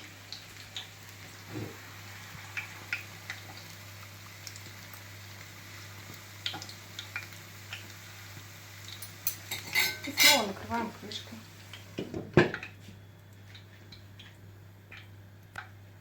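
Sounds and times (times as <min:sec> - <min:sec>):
batter frying in oil: 0:00.0 - 0:16.0
spitting oil pops and crackles: 0:06.0 - 0:09.9.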